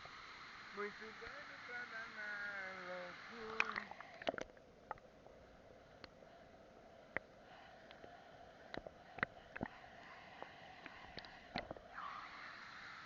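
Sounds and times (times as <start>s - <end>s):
water rushing: 0.0s - 5.0s, 7.0s - 13.0s
small sharp ticks and plops: 3.4s - 5.1s.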